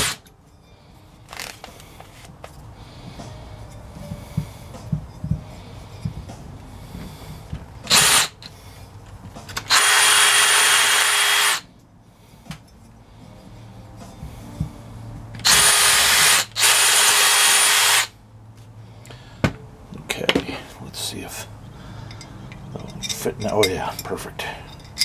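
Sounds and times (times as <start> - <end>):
power drill drilling: 0.0 - 0.2, 7.9 - 8.5, 9.6 - 11.7, 15.4 - 18.1.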